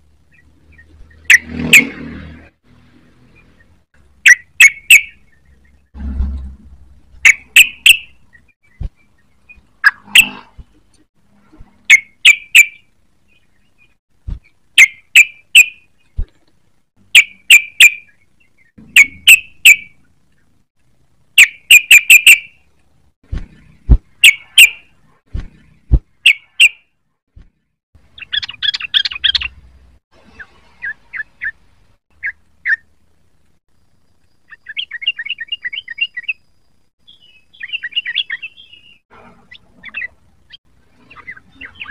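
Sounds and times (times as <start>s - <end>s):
bulbul song: 3.3s - 5.9s, 7.1s - 10.5s, 11.8s - 16.3s, 17.0s - 20.6s, 21.3s - 22.8s, 23.5s - 25.1s, 28.0s - 33.1s, 33.9s - 41.9s.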